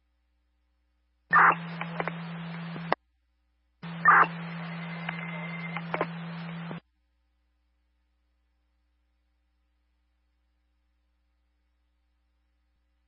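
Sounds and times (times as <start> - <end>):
radio static hiss and hum: 1.3 - 3.0, 3.8 - 6.8
two-way radio key-ups: 1.3 - 3.0, 3.8 - 6.8
squelch cutoff: 3.8 - 6.8.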